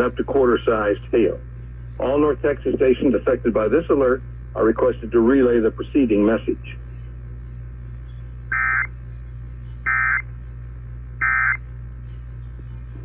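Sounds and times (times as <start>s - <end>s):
low radio hum: 0.0s - 13.0s
digital data tone bursts: 8.5s - 8.9s, 9.9s - 10.2s, 11.2s - 11.6s.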